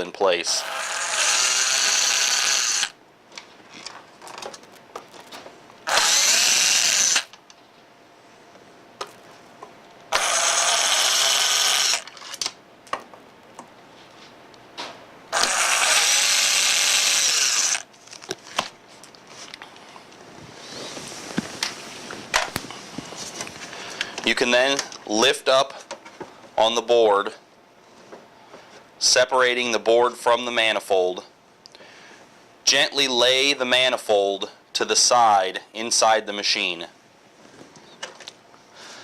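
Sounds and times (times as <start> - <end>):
power drill motor whining: 0.5 - 3.0, 5.9 - 7.4, 10.1 - 12.4, 15.3 - 17.9.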